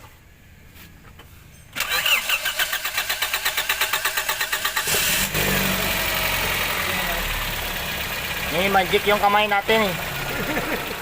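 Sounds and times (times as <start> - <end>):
car engine starter cranking: 1.8 - 5.6
car engine running: 4.9 - 11.0.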